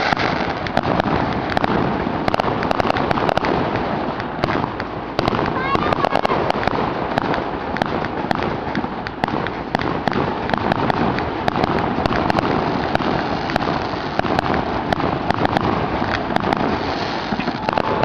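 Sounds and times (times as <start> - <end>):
fireworks cracking and rumbling: 0.0 - 18.0.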